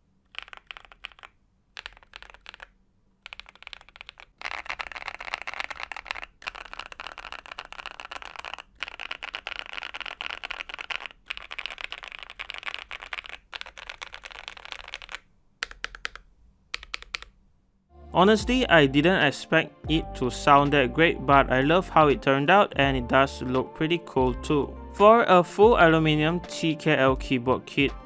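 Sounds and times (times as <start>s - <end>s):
fast typing on mechanical keyboard: 0.3s - 17.4s.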